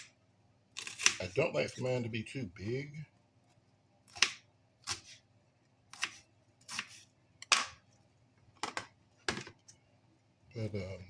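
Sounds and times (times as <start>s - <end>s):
knife slicing onion on cutting board: 4.1s - 5.2s, 5.9s - 7.8s.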